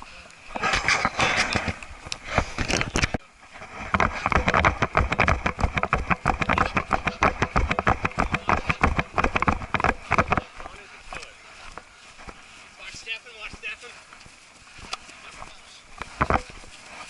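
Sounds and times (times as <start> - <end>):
camera case clicking and scraping: 0.6 - 3.2.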